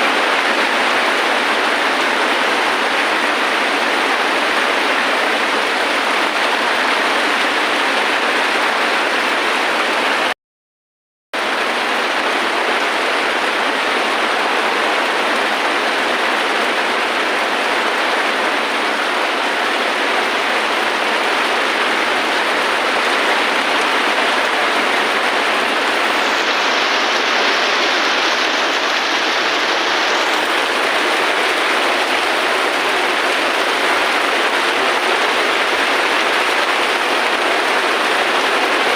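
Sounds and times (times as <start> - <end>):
steady rain: 0.0 - 10.4, 11.4 - 38.9.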